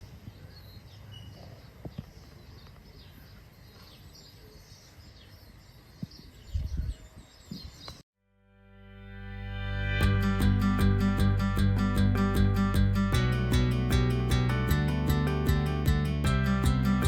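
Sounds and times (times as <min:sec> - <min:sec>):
birds chirping: 0:00.0 - 0:08.0
low thumps: 0:09.9 - 0:17.0.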